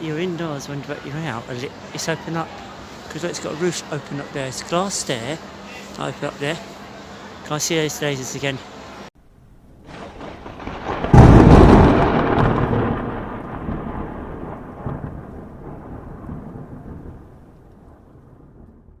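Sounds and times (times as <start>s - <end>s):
loud rumbling boom: 9.7s - 19.0s.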